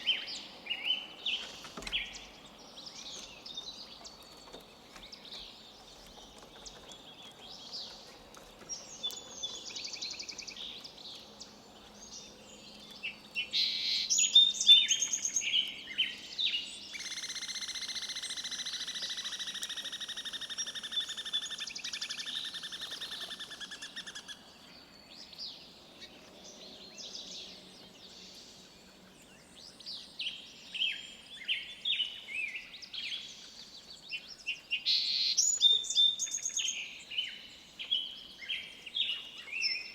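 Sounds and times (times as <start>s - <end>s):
songbirds chirping: 0.0s - 39.9s
bird trill: 13.1s - 16.2s, 16.9s - 24.4s.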